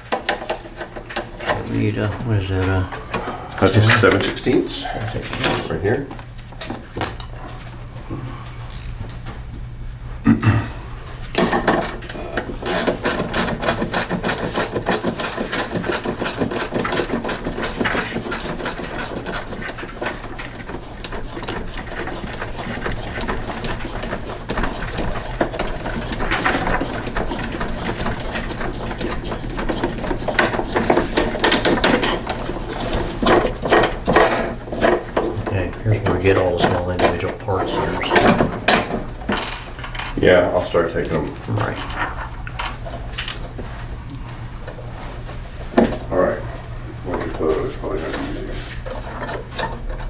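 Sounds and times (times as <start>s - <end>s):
ratchet wrench clicking: 8.7s - 9.0s, 11.8s - 19.5s.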